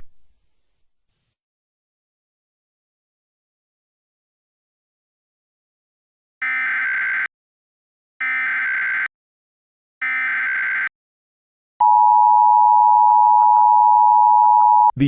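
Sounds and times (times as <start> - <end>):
digital chirping data bursts: 6.4 - 7.3, 8.2 - 9.1, 10.0 - 10.9.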